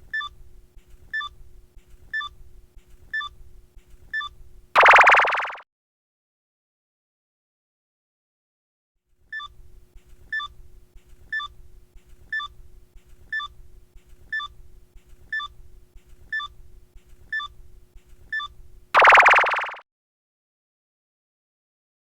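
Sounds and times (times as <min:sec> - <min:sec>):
low steady hum: 0:00.0 - 0:04.8, 0:09.2 - 0:19.7
short electronic beeps: 0:04.2 - 0:05.6, 0:17.3 - 0:17.5, 0:18.3 - 0:19.8.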